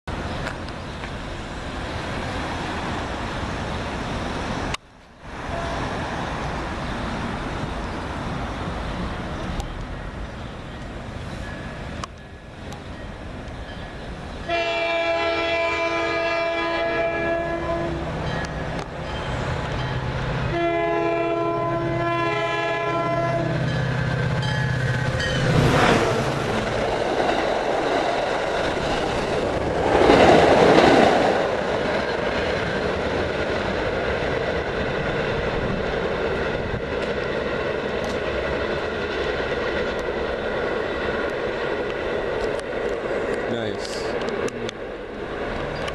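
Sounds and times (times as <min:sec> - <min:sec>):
locomotive rumbling: 0:00.1 - 0:45.9
locomotive air horn blasts: 0:05.5 - 0:05.9, 0:14.4 - 0:18.1, 0:20.5 - 0:23.6.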